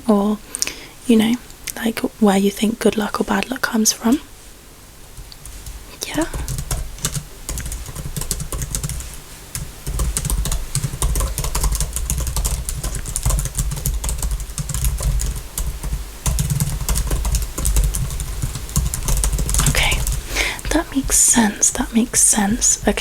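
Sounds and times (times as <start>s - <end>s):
fast typing on keyboard: 5.4s - 23.0s.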